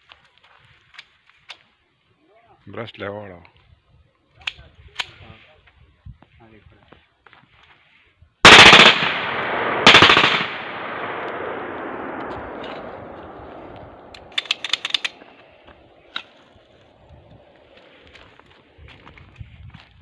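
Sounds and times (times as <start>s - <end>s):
pistol firing rapid bursts: 8.5s - 12.6s
gunshot echo: 8.5s - 15.4s
sharp metallic clicks: 8.5s - 15.4s.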